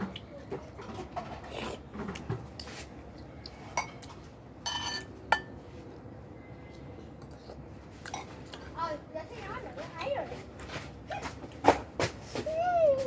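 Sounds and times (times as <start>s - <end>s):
utensils clinking against bowl: 3.7s - 5.6s.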